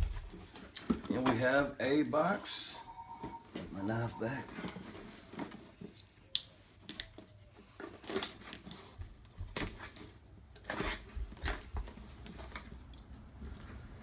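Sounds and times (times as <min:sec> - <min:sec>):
knife cutting cardboard box: 0:10.6 - 0:11.7.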